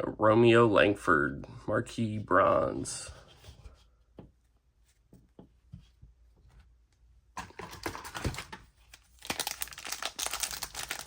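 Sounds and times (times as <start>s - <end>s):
plastic wrapper crinkling: 7.4s - 11.0s.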